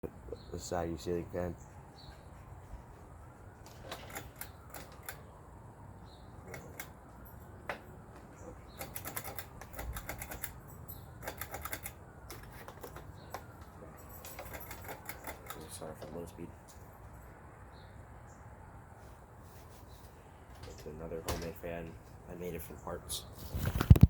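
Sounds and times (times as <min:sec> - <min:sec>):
faint fan whine: 0:00.0 - 0:24.0
ceiling fan clicking and rattling: 0:02.1 - 0:05.5, 0:06.4 - 0:17.0, 0:20.4 - 0:22.6.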